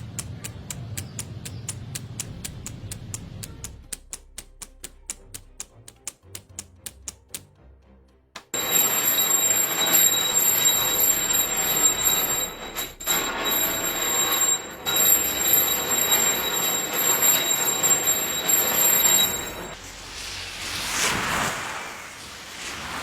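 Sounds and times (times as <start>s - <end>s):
bell ringing loudly: 8.6s - 19.8s.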